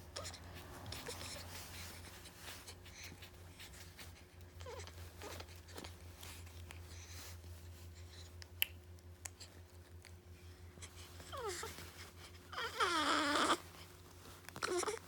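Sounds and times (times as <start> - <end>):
steady low hum: 0.0 - 15.0
baby whimpering: 11.2 - 11.8, 12.5 - 13.6, 14.6 - 15.0.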